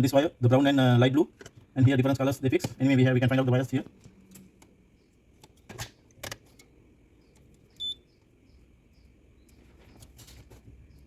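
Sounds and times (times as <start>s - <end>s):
high-pitched multimeter beep: 7.8s - 8.0s.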